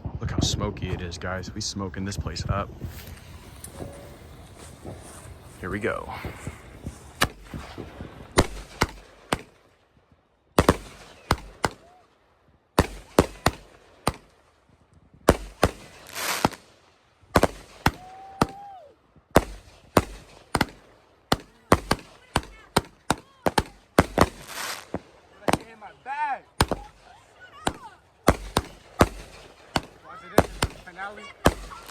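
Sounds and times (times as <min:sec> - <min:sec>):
fireworks hissing and crackling: 0:00.0 - 0:09.8, 0:10.6 - 0:12.0, 0:12.8 - 0:14.5, 0:15.3 - 0:31.9
fireworks bangs: 0:00.0 - 0:31.9
firework whistle: 0:02.8 - 0:09.5, 0:17.7 - 0:19.0.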